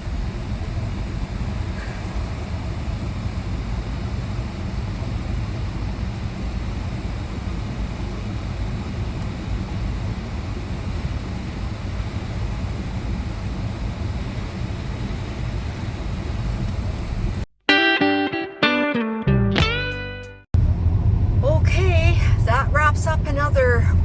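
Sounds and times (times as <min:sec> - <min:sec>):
vehicle engine and road rumble: 0:00.0 - 0:17.4, 0:20.6 - 0:24.0.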